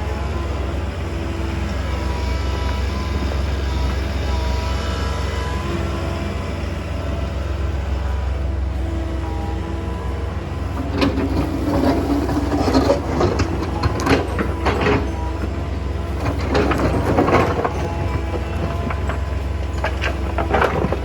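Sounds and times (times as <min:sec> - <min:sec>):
excavator running: 0:00.0 - 0:21.0
rocks clattering against steel bucket: 0:10.8 - 0:21.0.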